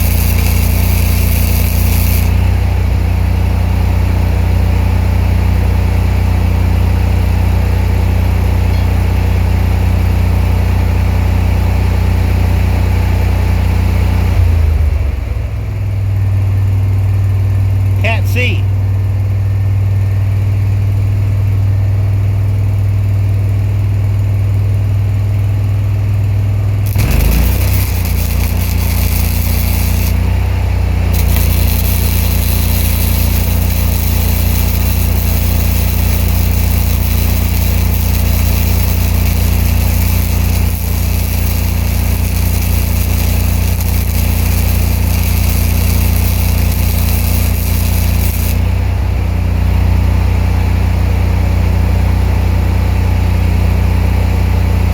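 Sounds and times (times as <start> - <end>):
welding arc crackling: 0.0 - 2.7, 26.8 - 49.1
engine-driven welder running: 0.0 - 18.6, 26.1 - 54.9.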